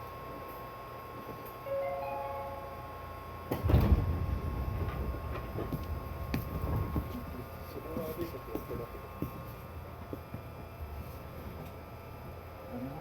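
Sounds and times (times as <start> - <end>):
door chime rising tones: 1.7 - 3.0
low train rumble: 1.7 - 13.0
sliding doors closing with thud: 3.5 - 8.2.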